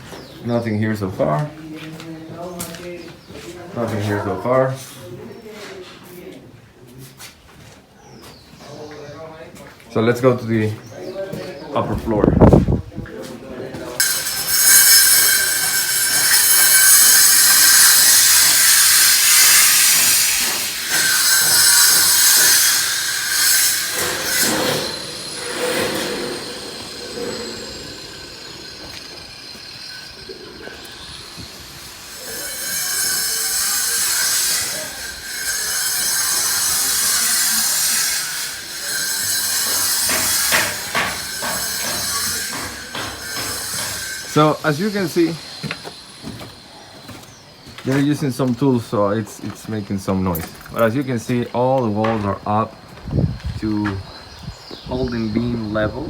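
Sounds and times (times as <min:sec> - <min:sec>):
power tool high-pitched hiss: 0:14.0 - 0:47.1.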